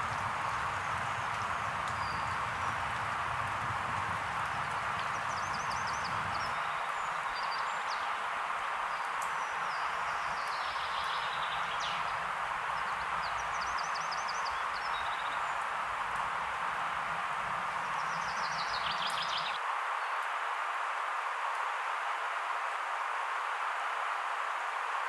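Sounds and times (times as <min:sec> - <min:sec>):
birds chirping: 0:00.0 - 0:07.1, 0:17.5 - 0:19.6
steady rain: 0:00.0 - 0:25.0.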